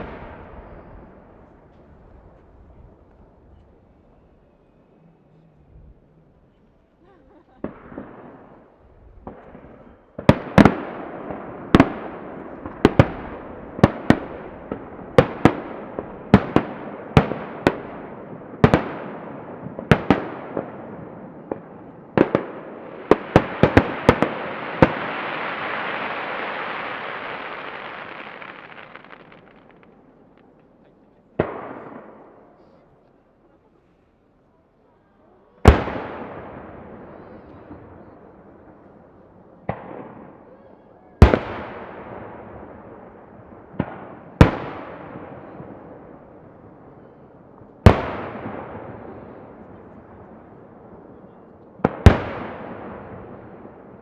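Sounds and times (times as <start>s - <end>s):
firework shells booming: 7.6s - 30.8s, 35.6s - 40.5s
even hiss: 23.8s - 29.9s.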